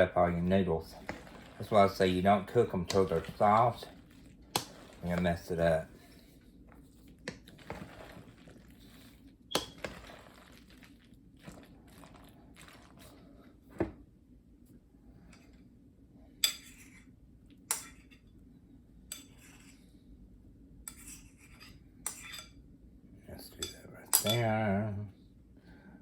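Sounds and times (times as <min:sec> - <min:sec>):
soft wet stirring: 0:00.1 - 0:13.9, 0:20.9 - 0:22.6.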